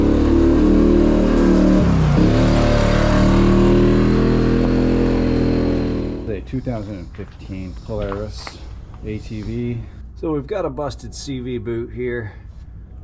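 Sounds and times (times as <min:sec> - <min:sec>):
atv engine running: 0:00.0 - 0:06.8.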